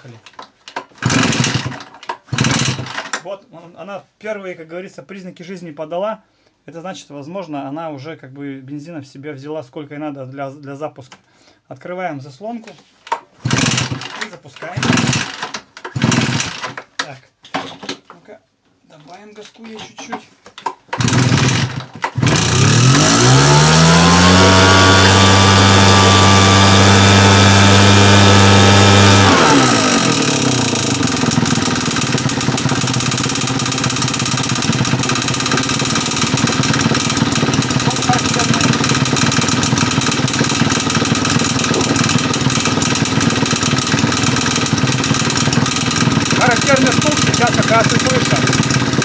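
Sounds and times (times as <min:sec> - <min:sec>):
leaf blower engine revving: 0:00.8 - 0:03.1, 0:13.4 - 0:16.8, 0:20.9 - 0:49.0.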